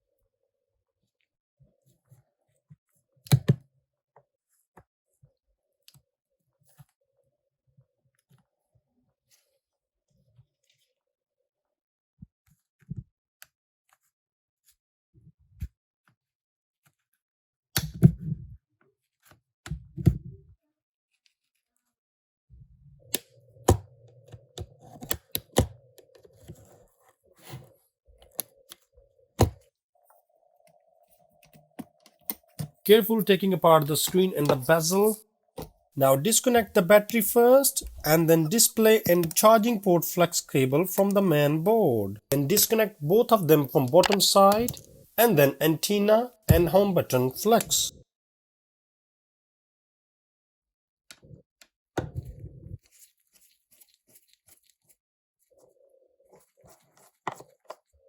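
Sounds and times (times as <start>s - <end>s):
small tools and plastic tapping: 56.4s - 57.9s.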